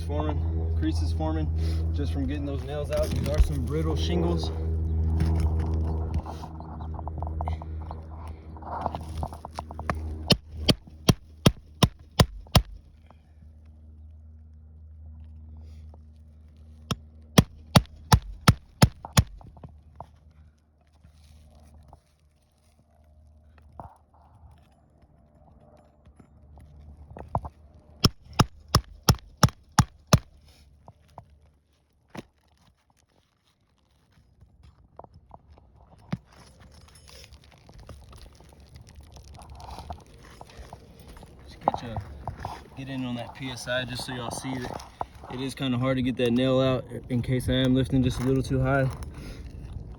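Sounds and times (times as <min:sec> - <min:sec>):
shingles crackling: 0:09.0 - 0:13.0, 0:17.4 - 0:19.5, 0:28.0 - 0:30.5
hammer striking metal tool: 0:10.3 - 0:12.8, 0:17.4 - 0:19.4, 0:28.0 - 0:30.3
sharp knock: 0:10.3 - 0:12.8, 0:17.4 - 0:19.4, 0:28.0 - 0:30.3.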